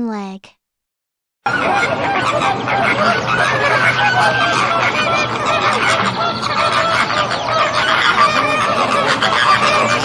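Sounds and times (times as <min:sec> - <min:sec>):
flamingos honking: 0:01.5 - 0:10.0.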